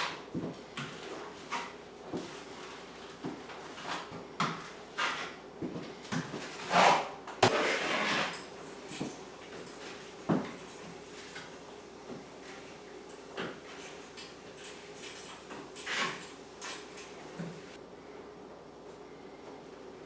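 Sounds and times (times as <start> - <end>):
drywall knife scraping: 3.6 - 4.2, 4.9 - 5.4, 6.4 - 8.5, 15.1 - 16.9.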